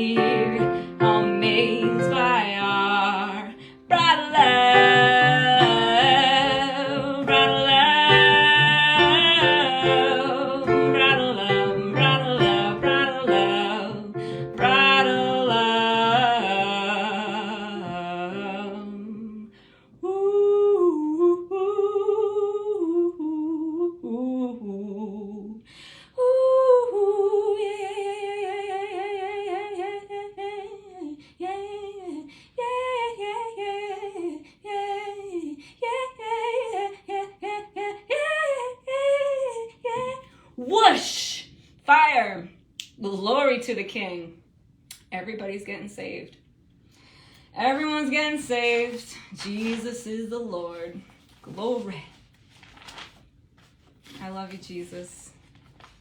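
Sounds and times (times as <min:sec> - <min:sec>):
worship music with wordless singing: 0:00.0 - 0:40.8.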